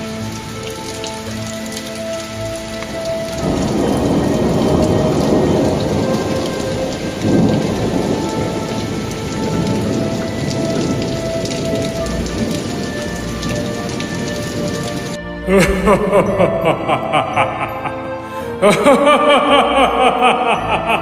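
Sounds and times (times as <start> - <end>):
steady rain: 0.0 - 21.0
rolling thunder: 3.3 - 15.2.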